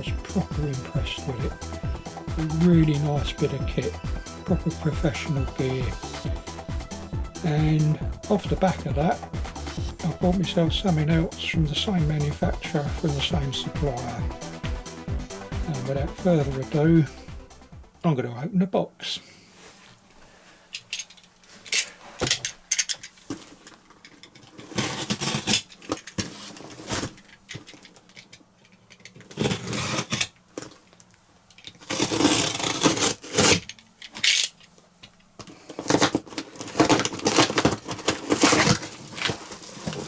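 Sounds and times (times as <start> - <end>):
packing rustling: 23.2 - 34.7, 35.4 - 40.0
cardboard scraping and tearing: 24.6 - 27.2, 29.3 - 30.3, 31.8 - 33.7, 35.8 - 40.0.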